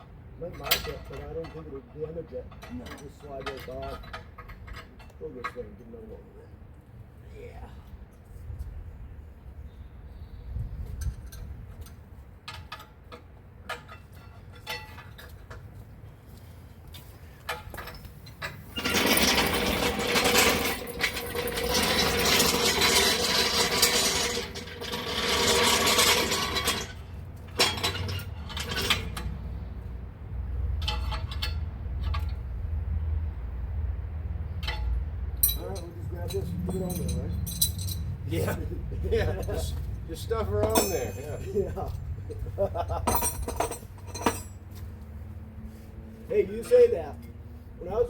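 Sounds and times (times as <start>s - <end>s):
metallic rattling and scraping: 0.4s - 5.8s, 10.9s - 15.8s, 17.4s - 32.8s, 34.4s - 48.0s
metal parts clinking: 17.5s - 29.3s, 34.6s - 38.6s, 40.6s - 41.6s, 43.1s - 44.6s.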